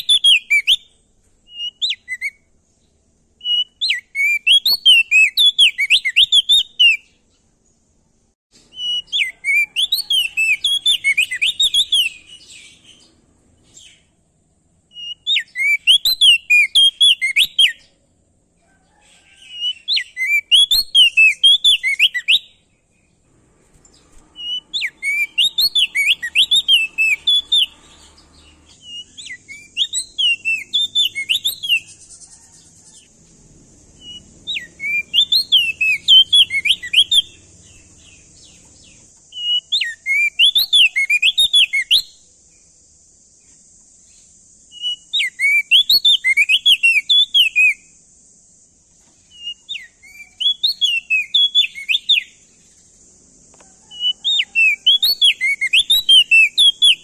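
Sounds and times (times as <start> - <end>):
bird singing rapid repeated notes: 0.0 - 7.9, 8.6 - 18.2, 19.6 - 42.8, 44.0 - 53.4, 54.0 - 57.0
steady high hiss: 19.2 - 57.0.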